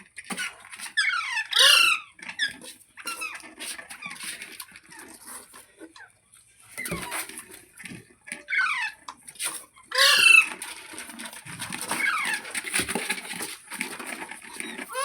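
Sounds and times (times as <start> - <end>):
parakeet squawking: 1.0 - 2.0, 9.9 - 10.5.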